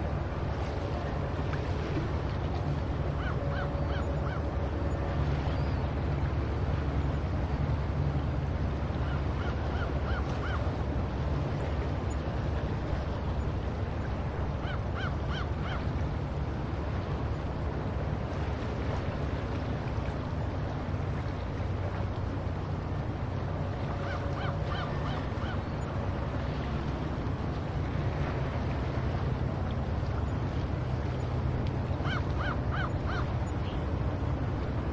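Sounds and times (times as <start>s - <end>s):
ocean waves rumbling: 0.0s - 34.9s
seagulls calling: 3.0s - 6.2s, 8.9s - 10.9s, 14.1s - 16.0s, 23.6s - 26.3s, 31.9s - 34.0s.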